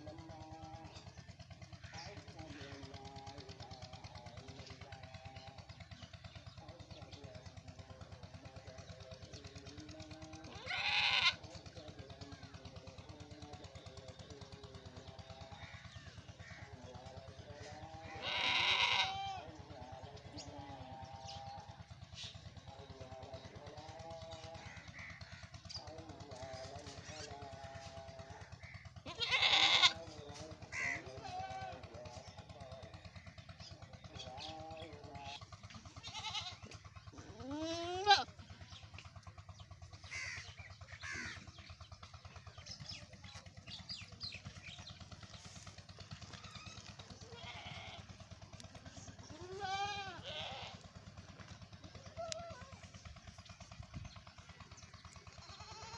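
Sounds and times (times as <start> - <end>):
goats bleating: 10.3 - 11.7, 17.6 - 21.7, 26.9 - 32.2, 34.3 - 38.9, 46.2 - 52.9, 55.3 - 55.9.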